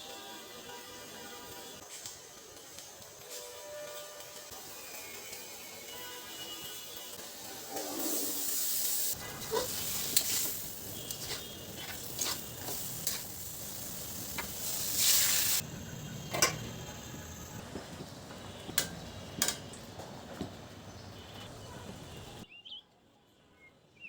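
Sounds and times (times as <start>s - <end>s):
food sizzling in hot oil: 4.1s - 18.1s
spatula knocking and scraping pan: 9.2s - 13.3s.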